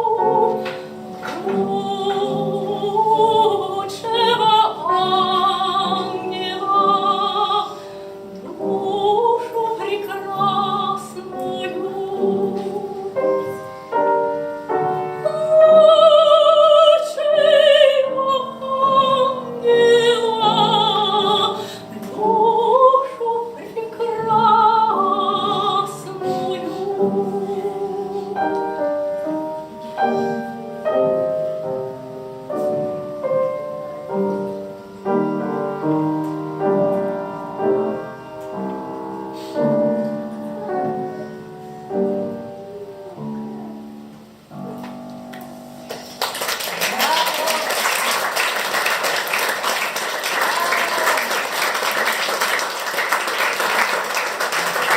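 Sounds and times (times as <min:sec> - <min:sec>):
solo piano chords: 0:00.0 - 0:46.6
audience applause: 0:45.9 - 0:54.9.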